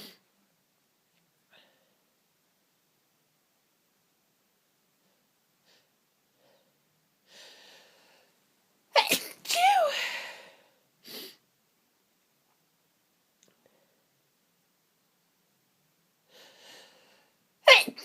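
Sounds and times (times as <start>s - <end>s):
person inhaling: 5.7s - 8.4s, 16.3s - 17.4s
person sneezing: 9.0s - 10.5s, 17.7s - 18.0s.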